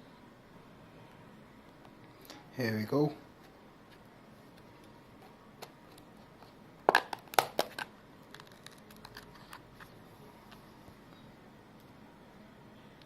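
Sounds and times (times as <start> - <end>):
packaging crackling open: 7.0 - 9.6.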